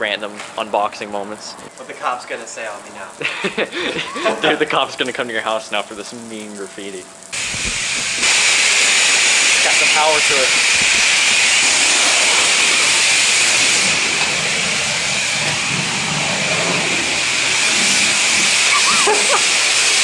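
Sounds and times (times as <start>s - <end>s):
pressure washer spraying water: 7.2s - 20.0s.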